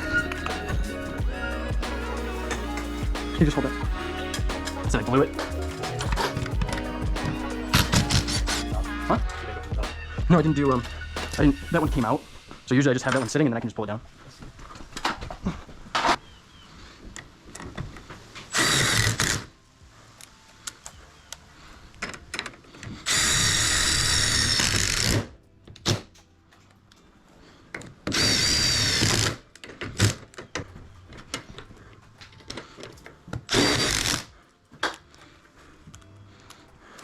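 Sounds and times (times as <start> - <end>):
power drill whining: 18.5 - 19.5, 23.1 - 25.3, 28.1 - 29.4, 33.4 - 34.3.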